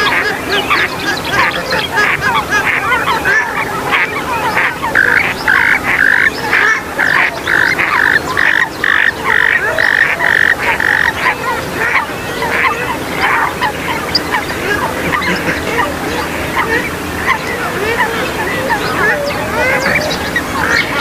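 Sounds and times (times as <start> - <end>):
waterbird loud nasal calls: 0.0 - 21.0
short chirping bird calls: 4.9 - 11.3.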